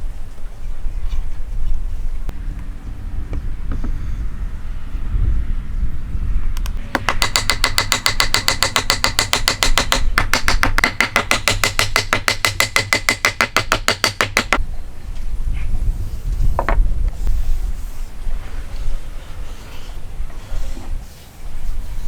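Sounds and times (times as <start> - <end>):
rapid hammer strikes on metal: 6.9 - 14.6.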